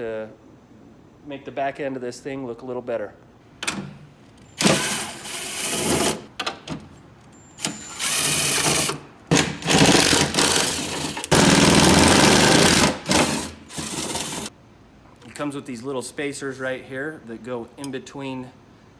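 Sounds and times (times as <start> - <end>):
power drill bursts: 4.6 - 6.2, 7.6 - 14.5.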